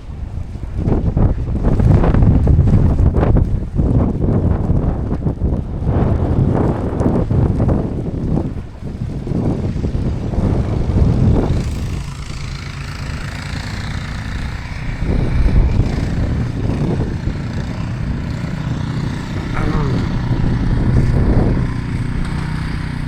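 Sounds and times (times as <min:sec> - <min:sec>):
vehicle passing: 0:09.7 - 0:23.0.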